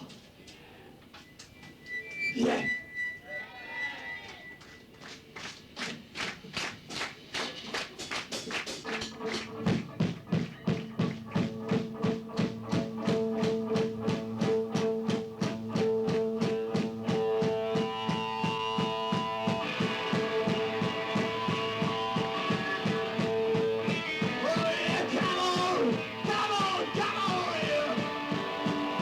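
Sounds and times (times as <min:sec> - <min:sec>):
drums and bass pulse: 0:06.0 - 0:29.0
heavy metal band playing: 0:09.2 - 0:29.0
electric guitar notes: 0:09.5 - 0:29.0.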